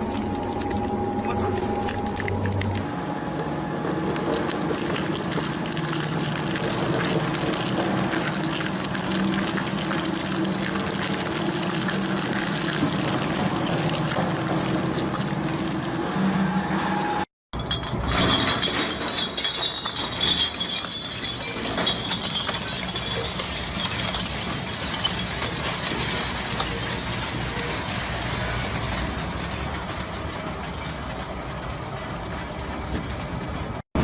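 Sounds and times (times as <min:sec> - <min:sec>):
shredding machine crushing material: 0:03.9 - 0:16.6, 0:21.0 - 0:32.1.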